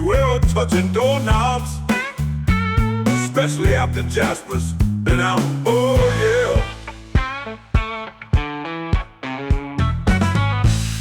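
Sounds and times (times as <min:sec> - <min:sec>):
bass line: 0:00.0 - 0:08.5, 0:09.7 - 0:11.0
guitar chords strummed: 0:05.8 - 0:11.0.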